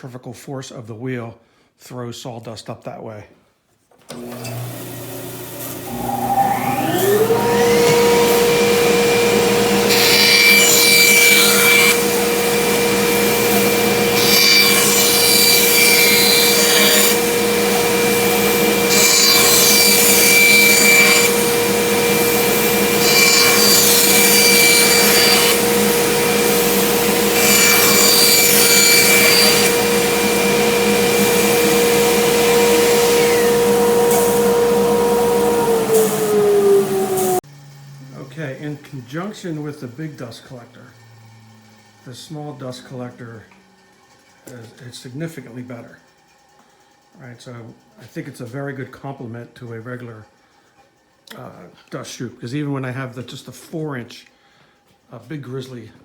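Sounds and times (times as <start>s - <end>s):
bandsaw cutting wood: 4.1s - 43.5s
dust collector motor whine: 4.1s - 43.5s.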